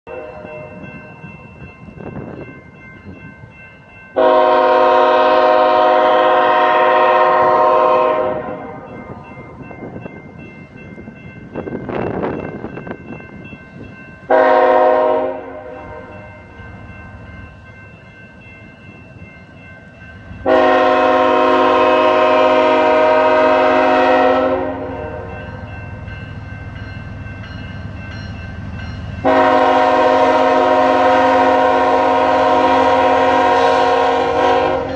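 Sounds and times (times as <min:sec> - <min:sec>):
low train rumble: 0:00.0 - 0:34.9
locomotive air horn blasts: 0:04.2 - 0:08.9, 0:14.3 - 0:16.3, 0:20.4 - 0:25.5, 0:29.2 - 0:34.9.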